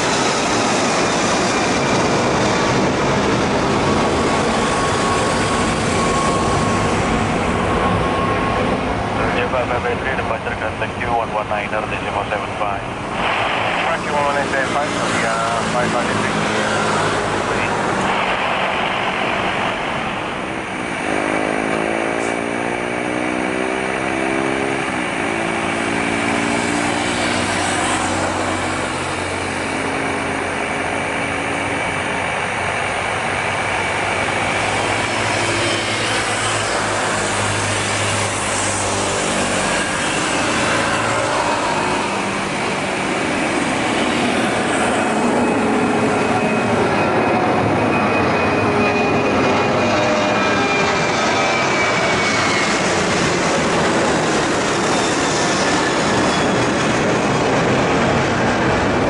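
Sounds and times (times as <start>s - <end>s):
jet engines at takeoff: 0.0s - 59.0s.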